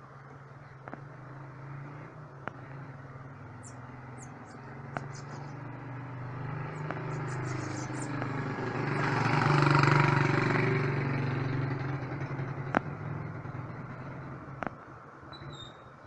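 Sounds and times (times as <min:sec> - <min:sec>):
vehicle engine passing by: 0:00.6 - 0:15.7
sharp clicks: 0:04.5 - 0:05.6, 0:06.8 - 0:08.4.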